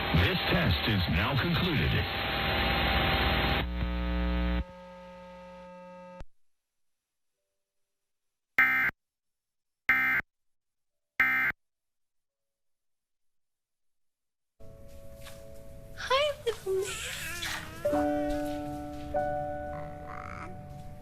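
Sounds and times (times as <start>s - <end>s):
loud broadcast audio: 0.0s - 4.6s.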